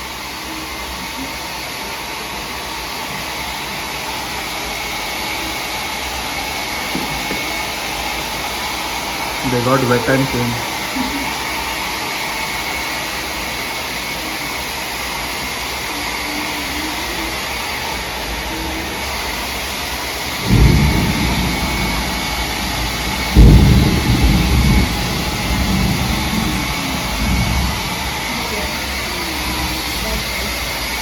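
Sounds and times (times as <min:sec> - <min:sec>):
heavy rain: 0:00.0 - 0:31.0
thunder rumbling: 0:20.4 - 0:30.3.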